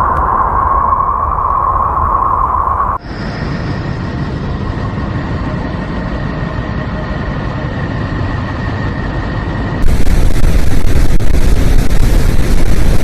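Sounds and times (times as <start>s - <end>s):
dense rumbling hiss: 9.8s - 13.0s.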